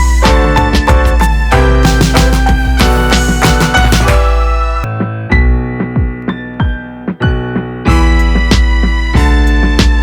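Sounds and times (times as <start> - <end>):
beat with heavy bass and drums: 0.0 - 4.8
held keyboard chords: 0.0 - 10.0.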